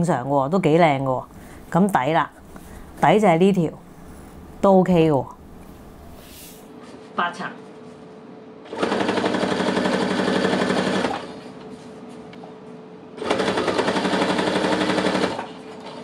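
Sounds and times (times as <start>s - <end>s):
sewing machine stitching: 8.7s - 11.4s, 13.2s - 16.0s.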